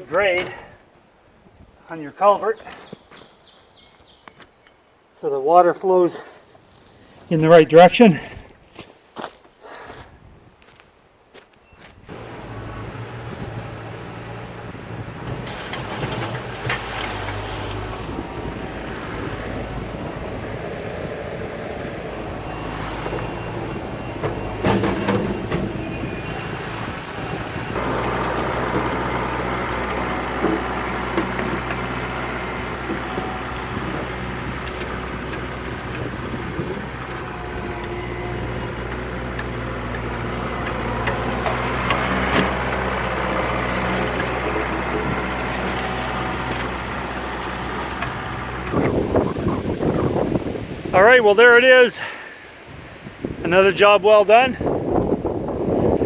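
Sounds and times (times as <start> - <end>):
diesel engine running: 12.1 - 56.0.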